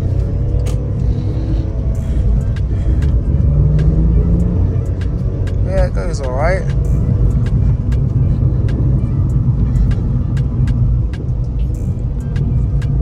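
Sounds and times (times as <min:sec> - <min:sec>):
car engine and tyres rumbling: 0:00.0 - 0:13.0.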